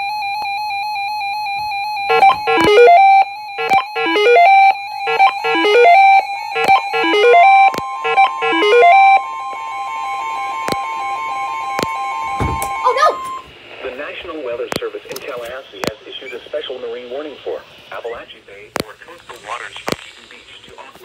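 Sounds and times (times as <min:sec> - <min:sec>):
steady single alarm tone: 0:02.0 - 0:13.5
warbling electronic beep tone: 0:02.1 - 0:09.3
electronic tune of falling notes: 0:02.1 - 0:13.4.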